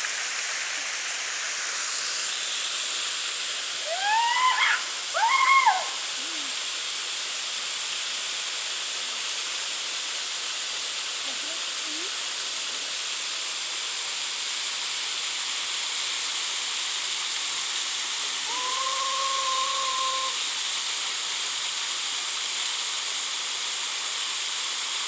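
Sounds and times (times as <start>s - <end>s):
waterfall rushing: 2.6s - 7.3s, 17.2s - 20.8s.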